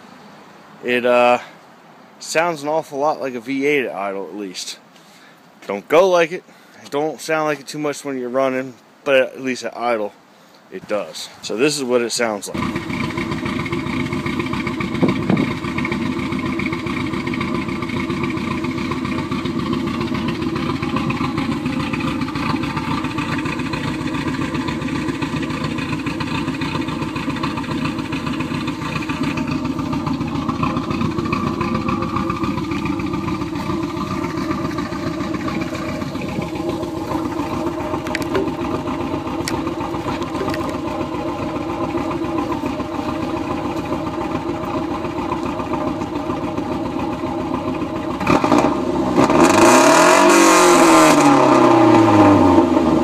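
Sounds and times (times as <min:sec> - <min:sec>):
car engine idling: 0:10.8 - 0:53.0.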